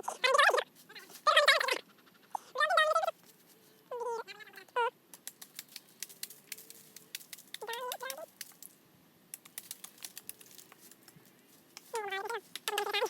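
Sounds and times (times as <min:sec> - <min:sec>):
sharp clicks: 0:11.8 - 0:13.0.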